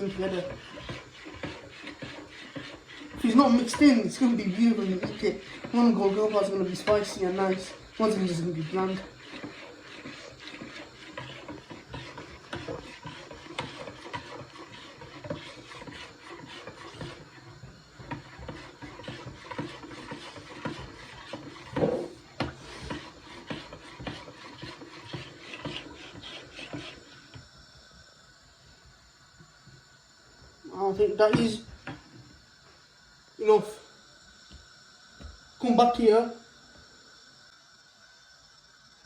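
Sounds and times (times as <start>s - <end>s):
utensil scraping a bowl: 0.0s - 27.4s.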